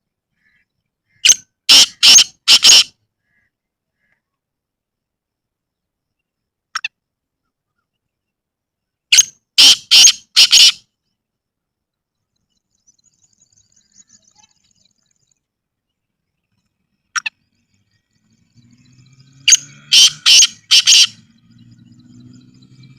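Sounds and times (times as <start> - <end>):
bird calling harsh notes: 0.4 - 4.2, 9.1 - 10.9, 18.6 - 22.9.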